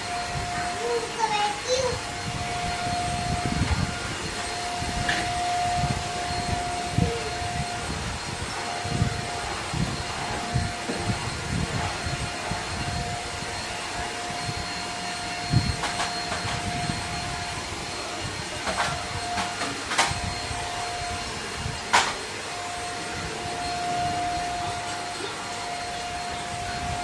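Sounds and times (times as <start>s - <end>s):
handheld vacuum cleaner running: 0.0s - 27.0s.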